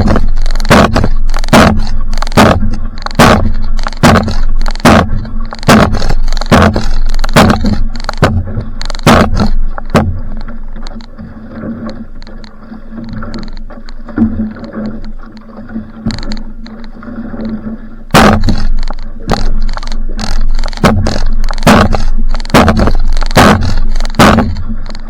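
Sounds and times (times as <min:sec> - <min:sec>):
water splashing against hull: 0:00.0 - 0:25.0
gusts hitting microphone: 0:20.5 - 0:24.8.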